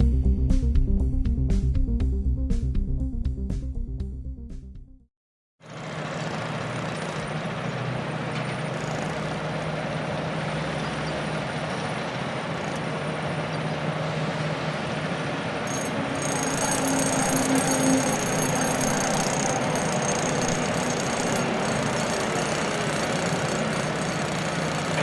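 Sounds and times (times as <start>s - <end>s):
construction site noise: 5.6s - 25.0s
truck engine running: 5.7s - 25.0s
high steady tones: 15.7s - 25.0s.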